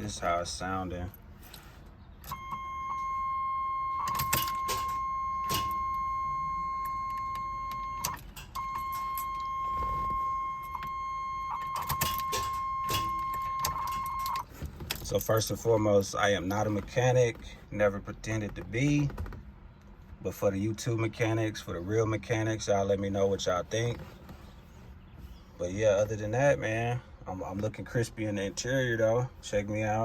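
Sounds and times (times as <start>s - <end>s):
car warning buzzer: 2.3s - 14.5s.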